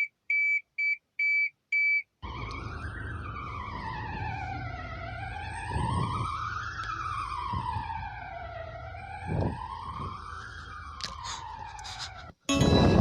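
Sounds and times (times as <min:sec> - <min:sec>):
siren wailing: 0:02.2 - 0:13.0
harsh alarm tone: 0:11.2 - 0:13.0.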